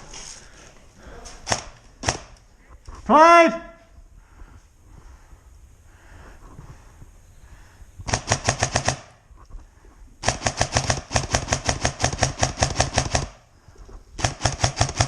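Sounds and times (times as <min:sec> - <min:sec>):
airsoft gun firing full auto: 0:01.5 - 0:02.4, 0:08.1 - 0:09.2, 0:10.2 - 0:13.4, 0:14.2 - 0:15.0.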